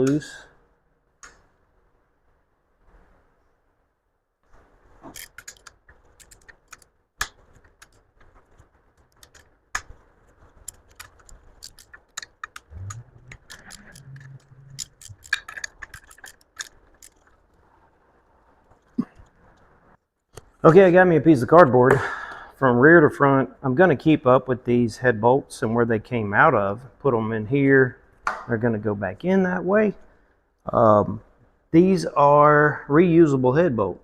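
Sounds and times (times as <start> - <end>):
ratchet clicking: 10.6 - 17.3.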